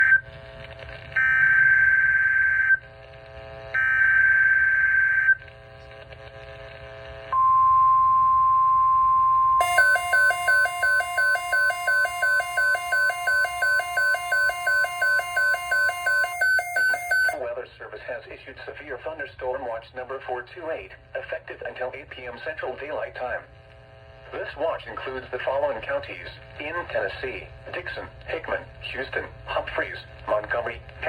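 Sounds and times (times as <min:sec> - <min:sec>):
pulsing two-pitch beep alarm: 0:07.4 - 0:17.4
screechy digital data bursts: 0:09.6 - 0:17.4
steady alert tone: 0:09.6 - 0:17.4.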